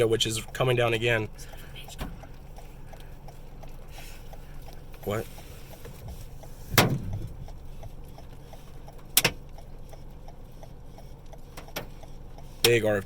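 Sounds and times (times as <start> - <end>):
vehicle engine running: 0.0 - 13.0
heavy thump: 6.7 - 7.4.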